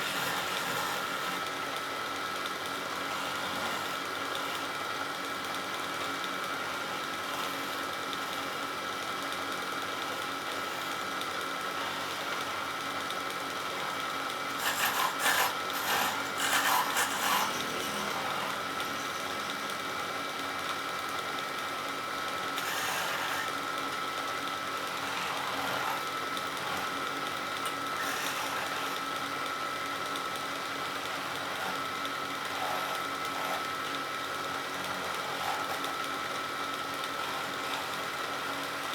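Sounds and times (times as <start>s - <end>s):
turning tool cutting wood: 0.0s - 1.5s, 2.1s - 38.9s
wood lathe whining: 0.0s - 38.9s.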